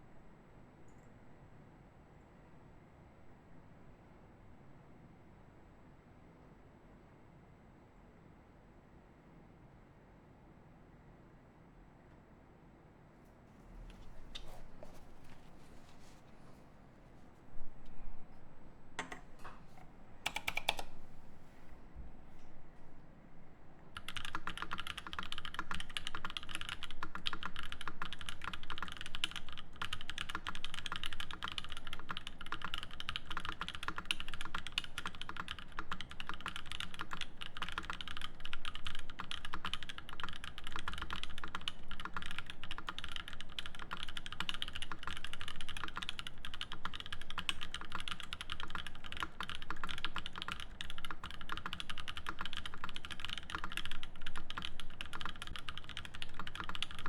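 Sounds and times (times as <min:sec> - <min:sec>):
mechanical keyboard typing: 0:20.2 - 0:21.0, 0:23.9 - 0:57.0.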